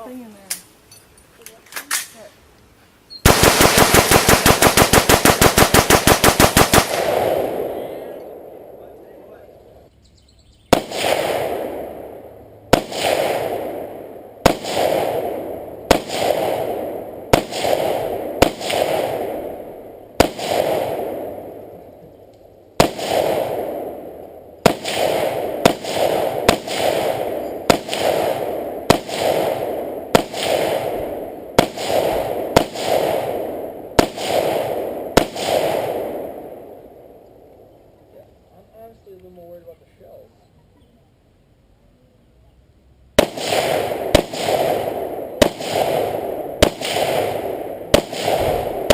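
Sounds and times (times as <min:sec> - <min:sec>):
rifle firing single shots: 0:03.2 - 0:09.7, 0:10.7 - 0:37.5, 0:43.2 - 0:48.9
long rolling echo: 0:03.3 - 0:09.9, 0:10.7 - 0:38.1, 0:43.2 - 0:48.9.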